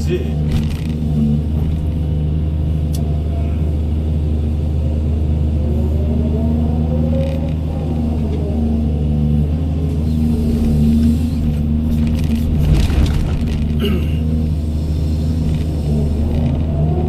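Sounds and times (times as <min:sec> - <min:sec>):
diesel excavator engine running: 0:00.0 - 0:17.0
hydraulic whine: 0:09.9 - 0:16.9.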